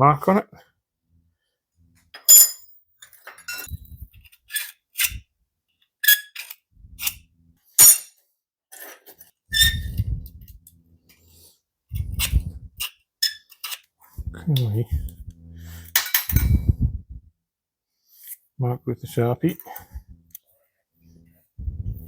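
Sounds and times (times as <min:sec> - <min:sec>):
sharp metallic clinks: 0:02.2 - 0:02.7.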